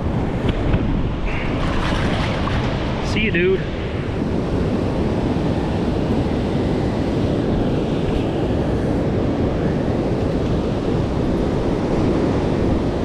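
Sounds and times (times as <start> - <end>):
wind buffeting microphone: 0.0 - 13.0
river water rushing: 1.1 - 5.3.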